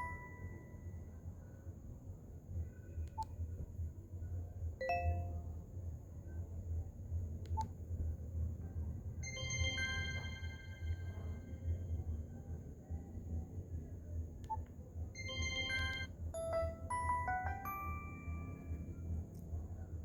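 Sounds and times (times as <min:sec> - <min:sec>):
bell-like ringtone chime: 0:00.0 - 0:01.0, 0:04.8 - 0:05.4, 0:09.2 - 0:11.5, 0:15.2 - 0:19.0
steady low hum: 0:00.0 - 0:20.0.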